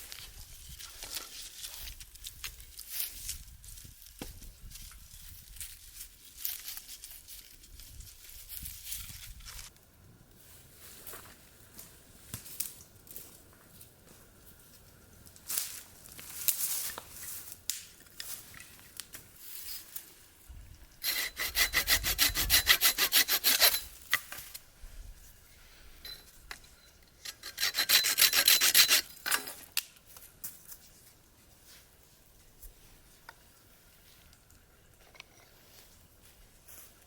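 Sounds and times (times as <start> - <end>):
hand saw cutting wood: 21.0 - 24.0, 27.2 - 29.6.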